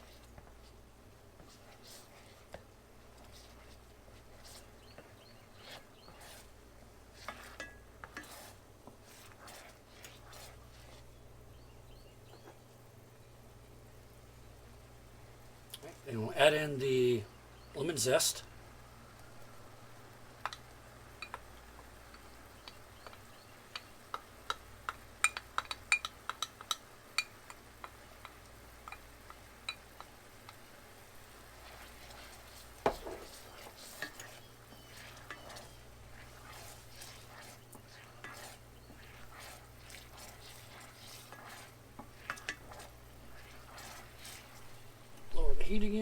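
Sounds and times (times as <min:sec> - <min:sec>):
utensil scraping a skillet: 0:00.0 - 0:11.7, 0:20.4 - 0:45.3
sauce sizzling: 0:00.0 - 0:11.8, 0:13.9 - 0:46.0.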